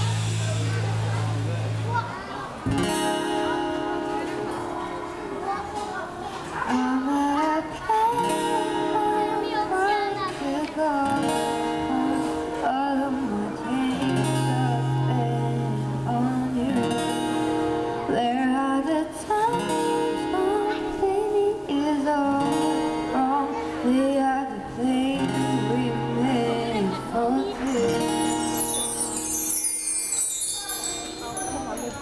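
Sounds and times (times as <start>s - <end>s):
acoustic guitar strumming: 0.0s - 32.0s
woman singing: 6.7s - 17.3s, 18.0s - 29.2s.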